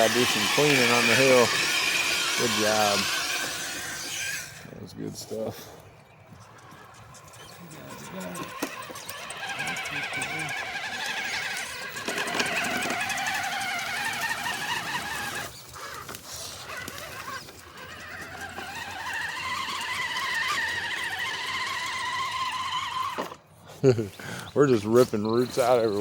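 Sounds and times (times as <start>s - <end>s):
electric motor and gearbox whining: 0.0s - 26.0s.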